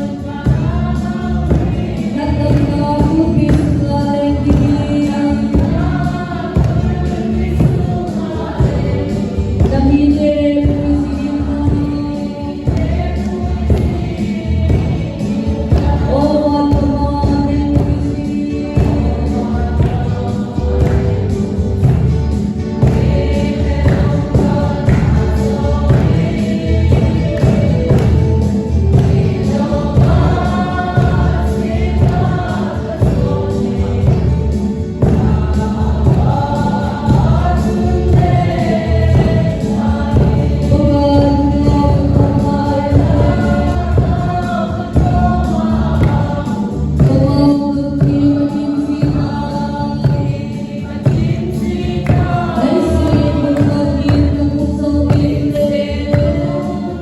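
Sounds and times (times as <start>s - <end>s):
choral gospel singing: 0.0s - 57.0s
strong steady low beat: 18.8s - 47.4s.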